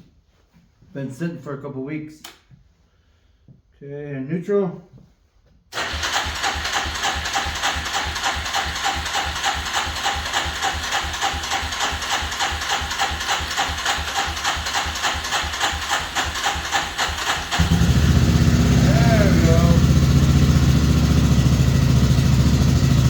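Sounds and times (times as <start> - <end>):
electric starter cranking engine: 5.7 - 23.0.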